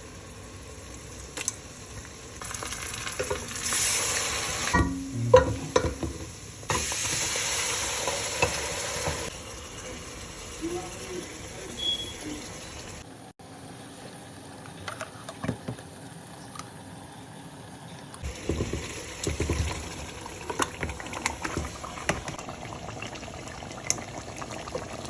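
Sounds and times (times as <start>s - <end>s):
food hissing in pot: 2.4s - 12.7s.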